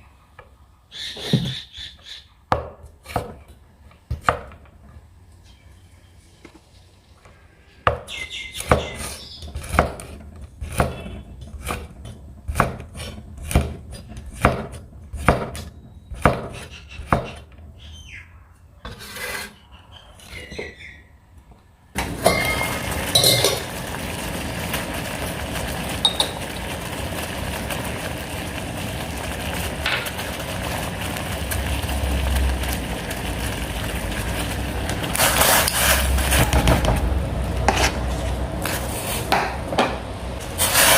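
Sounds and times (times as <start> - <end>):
knife chopping on wooden board: 8.6 - 11.9, 12.5 - 15.6, 16.2 - 17.4.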